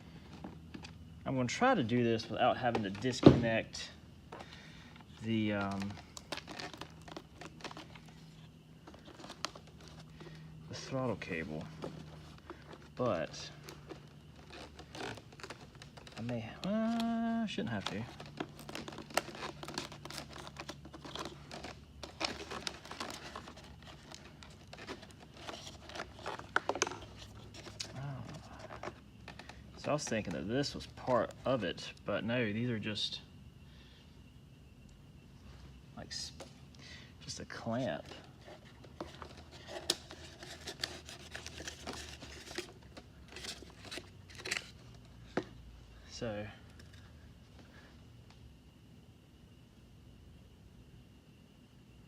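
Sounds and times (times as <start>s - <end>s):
plastic and tape rustling: 0.0s - 32.0s, 37.3s - 46.1s.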